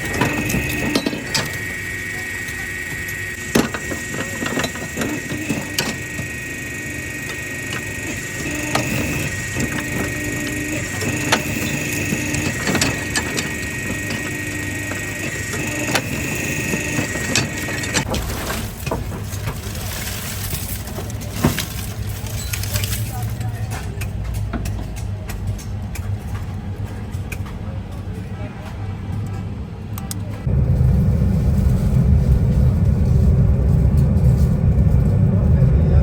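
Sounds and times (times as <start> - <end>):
factory machinery humming: 0.0 - 36.0
scrap clattering and knocking: 3.5 - 6.4, 7.2 - 29.4.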